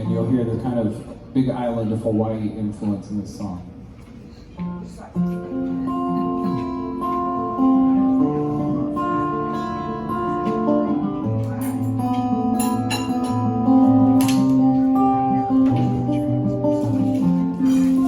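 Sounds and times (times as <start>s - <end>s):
finger-picked guitar: 4.6s - 18.0s.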